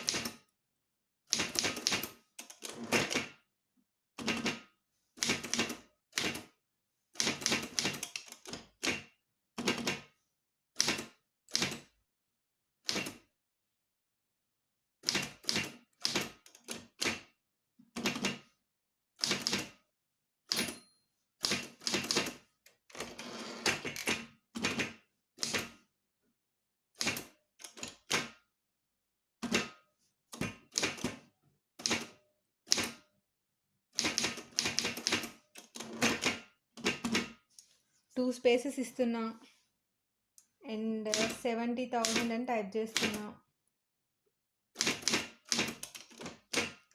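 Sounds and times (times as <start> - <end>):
typewriter keys striking: 1.4 - 3.2, 34.0 - 37.3, 42.0 - 42.3, 44.8 - 46.8.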